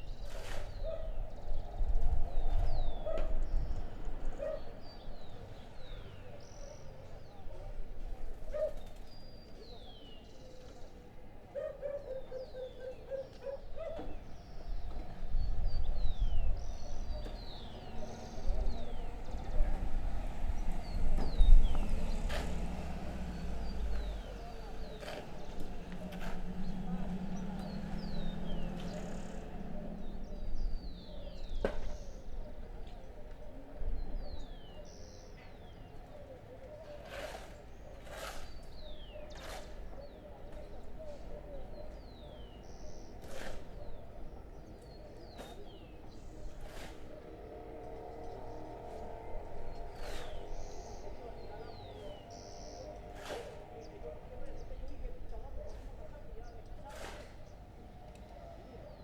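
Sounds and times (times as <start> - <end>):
birds chirping: 11.8 - 36.8, 37.5 - 59.0
low traffic rumble: 14.0 - 59.0.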